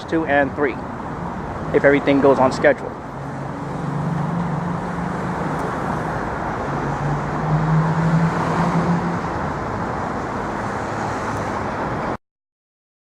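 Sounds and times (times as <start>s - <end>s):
street traffic hum: 0.0s - 12.2s
low engine drone: 2.6s - 10.6s.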